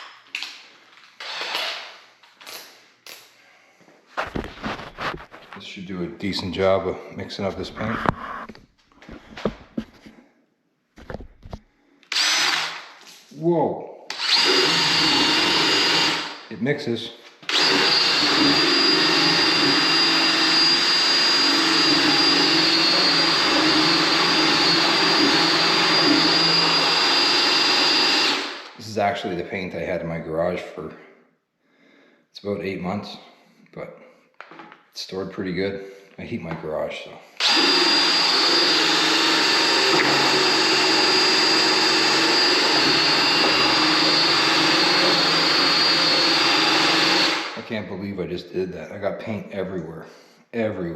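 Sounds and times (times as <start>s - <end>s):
power drill motor whine: 1.2s - 1.9s, 12.1s - 12.9s, 14.1s - 16.4s, 17.5s - 28.7s, 37.4s - 47.6s.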